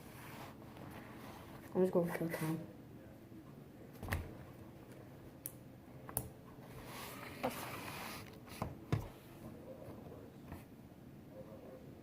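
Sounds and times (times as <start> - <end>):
soft rustle: 0.0 - 2.6.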